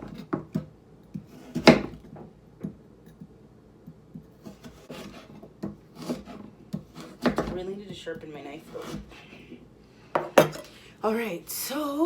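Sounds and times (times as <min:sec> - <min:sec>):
knife chopping on wooden board: 0:00.0 - 0:02.8, 0:04.2 - 0:09.2.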